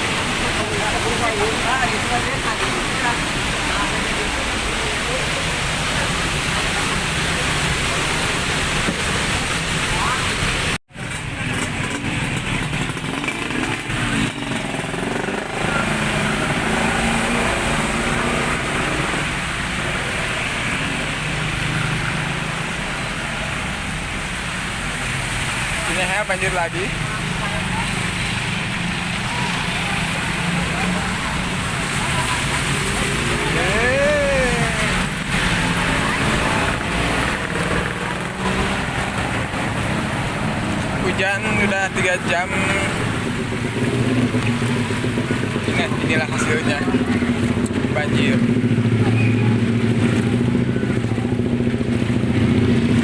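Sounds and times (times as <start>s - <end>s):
traffic noise: 0.0s - 53.0s
rising and falling voice-like tone: 29.3s - 37.6s
motorcycle engine running: 42.7s - 53.0s.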